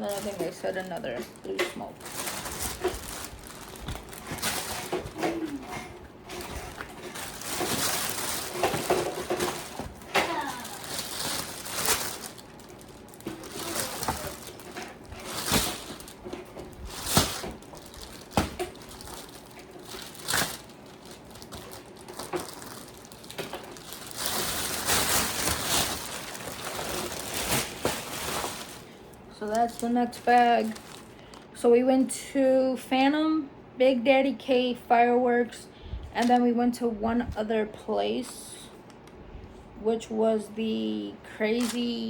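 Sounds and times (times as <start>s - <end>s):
bag and packaging crinkling: 0.0s - 31.5s, 41.5s - 42.0s
items knocking and tapping: 3.8s - 10.3s.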